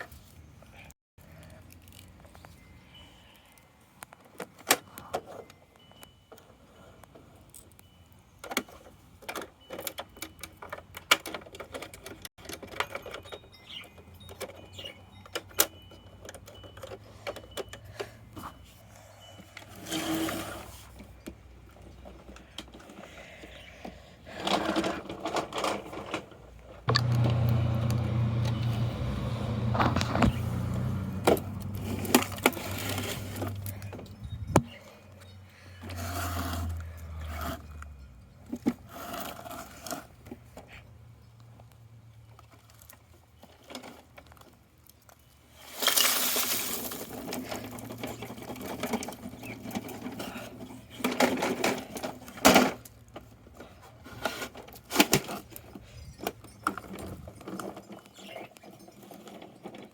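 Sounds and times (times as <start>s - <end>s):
plastic scraping: 24.3s - 28.6s, 29.6s - 34.7s
low motor hum: 26.9s - 34.6s.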